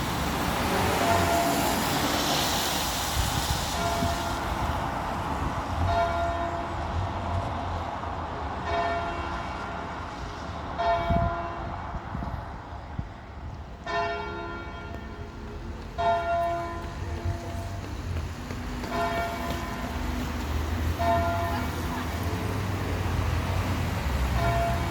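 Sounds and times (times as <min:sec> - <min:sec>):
church bells ringing: 0:01.0 - 0:01.7, 0:08.6 - 0:09.8, 0:10.8 - 0:11.6, 0:13.8 - 0:17.8, 0:18.8 - 0:20.1, 0:20.9 - 0:22.4, 0:24.3 - 0:24.9.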